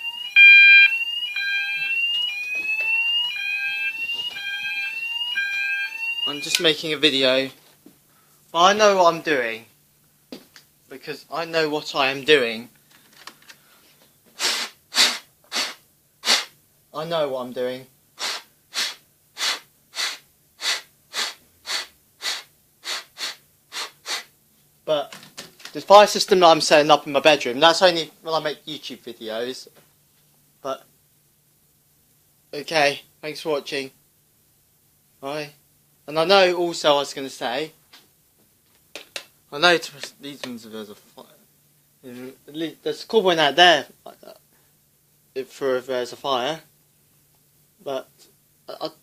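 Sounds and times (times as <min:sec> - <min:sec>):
pulsing fire alarm tone: 0:00.0 - 0:06.6
sweeping fire alarm sounder: 0:00.0 - 0:07.0
person breathing quickly: 0:13.5 - 0:16.5, 0:18.2 - 0:24.3.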